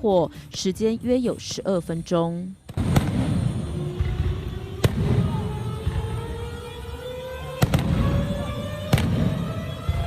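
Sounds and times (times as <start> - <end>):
low rumble of fireworks: 2.6 - 10.0
fireworks bangs: 2.7 - 10.0.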